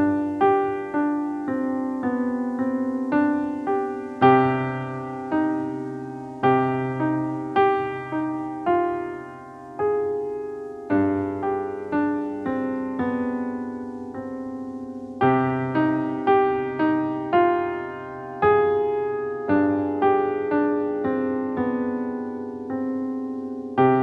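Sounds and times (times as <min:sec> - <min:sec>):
slow piano melody: 0:00.0 - 0:24.0.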